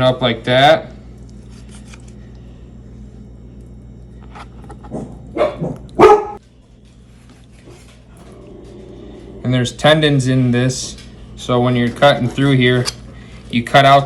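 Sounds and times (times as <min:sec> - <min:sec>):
steady low hum: 0:00.0 - 0:14.0
dog barking: 0:04.9 - 0:06.4.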